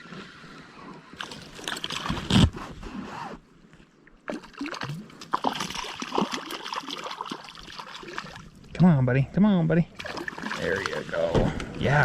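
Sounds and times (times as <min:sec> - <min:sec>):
water splashing and sloshing: 0:00.0 - 0:03.0, 0:03.6 - 0:09.0, 0:09.9 - 0:12.0
loud thump: 0:11.3 - 0:11.7.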